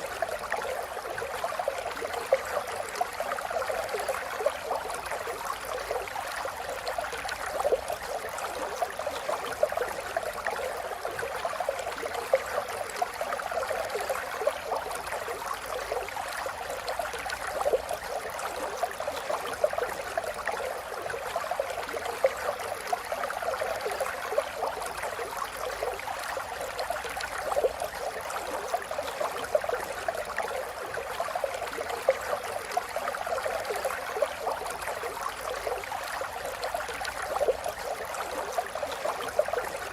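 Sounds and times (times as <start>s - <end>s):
river water babbling over rocks: 0.0s - 39.9s.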